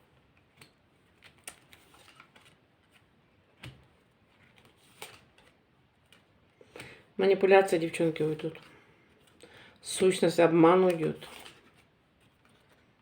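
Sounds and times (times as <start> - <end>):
cards tapping and rustling: 0.1 - 7.0.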